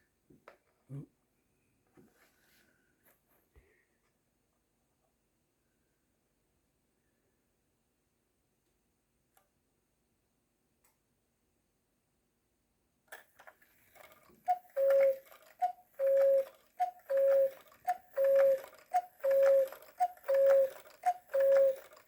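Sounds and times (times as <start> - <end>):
clock click: 13.1 - 22.0
cuckoo clock call: 13.9 - 22.0.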